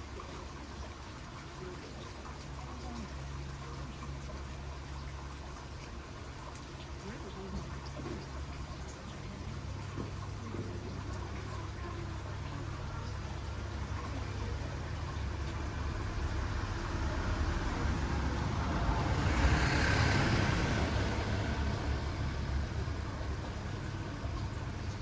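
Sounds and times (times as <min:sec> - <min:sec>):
vehicle passing by: 0:13.9 - 0:25.0.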